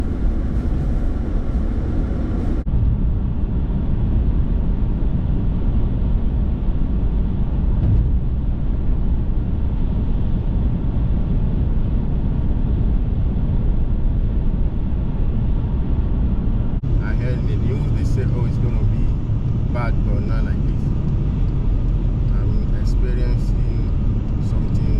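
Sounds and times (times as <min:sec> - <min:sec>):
car road and engine noise: 0:00.0 - 0:24.9.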